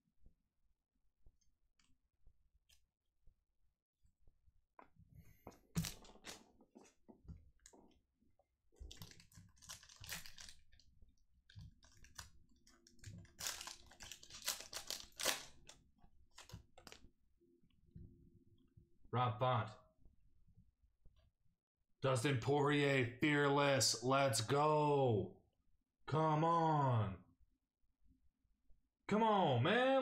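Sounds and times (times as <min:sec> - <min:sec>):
trading cards and wrapper crinkling: 0:05.6 - 0:07.0, 0:08.8 - 0:17.1.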